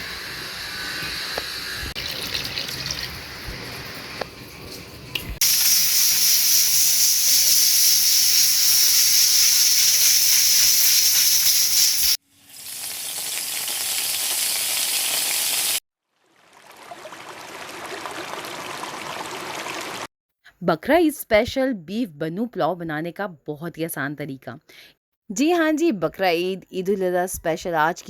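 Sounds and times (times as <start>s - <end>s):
food sizzling in hot fat: 0.0s - 4.6s, 5.3s - 15.8s.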